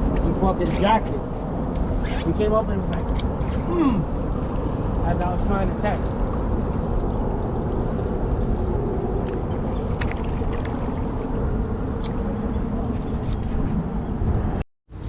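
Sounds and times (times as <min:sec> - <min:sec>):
wind rumbling on microphone: 0:00.0 - 0:15.0
water sloshing against boat hull: 0:09.2 - 0:14.0.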